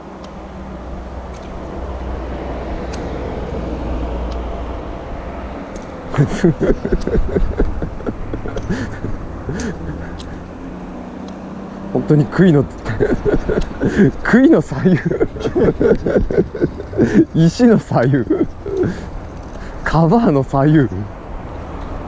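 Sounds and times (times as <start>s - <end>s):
person's indistinct voice: 6.1s - 10.5s, 11.9s - 21.1s.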